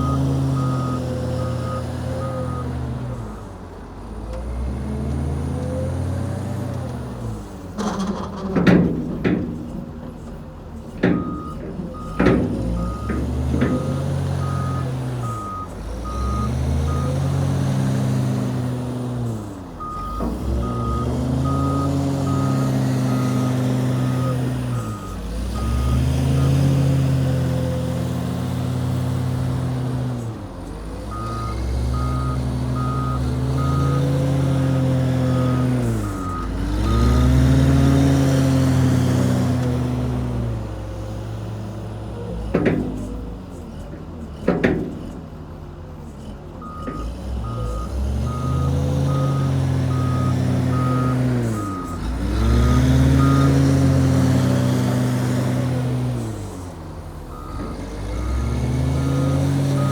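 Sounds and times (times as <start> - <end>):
reversing alarm beeping: 0.0 - 2.7, 11.0 - 17.3, 19.8 - 26.9, 31.1 - 37.4, 46.6 - 53.8, 57.3 - 59.9
diesel engine revving: 0.0 - 59.9.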